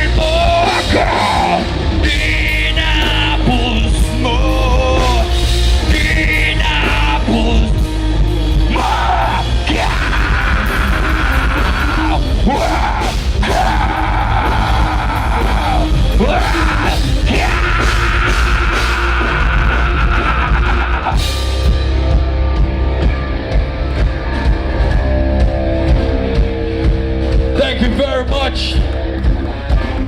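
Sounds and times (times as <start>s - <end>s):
heavy metal band playing: 0.0s - 30.0s
person yelling: 0.2s - 1.7s, 8.7s - 21.3s.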